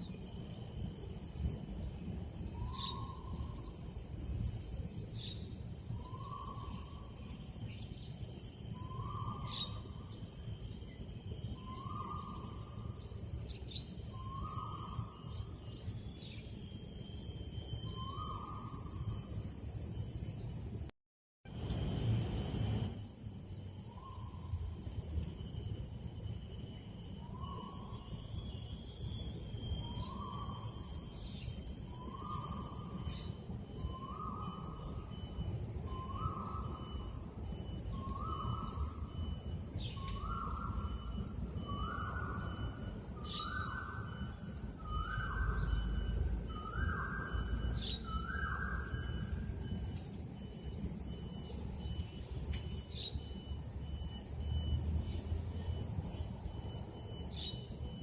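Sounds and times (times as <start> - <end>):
low outdoor rumble: 21.5 - 28.2
faint high chirps: 21.5 - 58.0.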